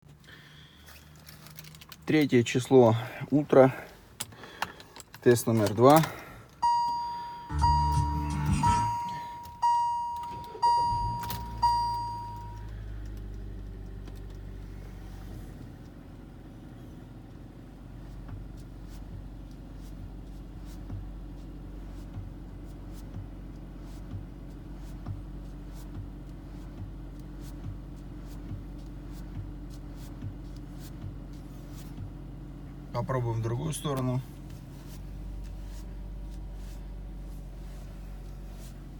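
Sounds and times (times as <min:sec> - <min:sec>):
car engine humming: 0:00.1 - 0:38.9
steering knocks: 0:04.2 - 0:14.5
car dashboard chime: 0:06.6 - 0:12.7.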